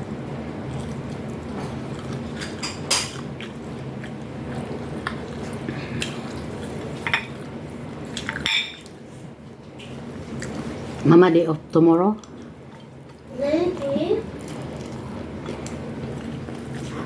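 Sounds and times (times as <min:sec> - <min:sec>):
cutlery clinking on plates: 0:02.4 - 0:03.2, 0:08.2 - 0:08.9.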